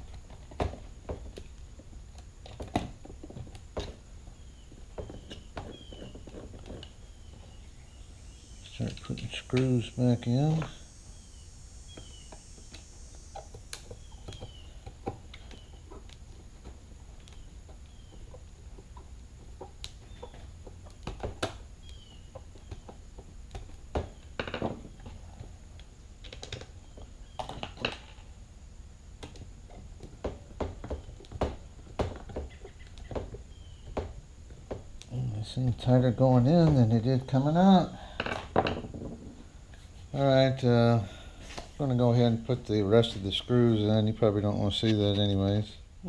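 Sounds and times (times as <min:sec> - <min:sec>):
birds chirping: 0:03.1 - 0:25.6, 0:26.4 - 0:28.2, 0:29.3 - 0:38.2.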